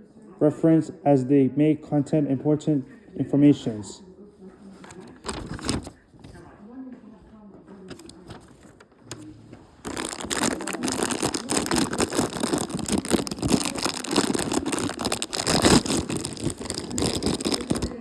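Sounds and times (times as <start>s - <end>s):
plastic packaging crinkling: 4.9s - 6.0s, 7.9s - 18.0s.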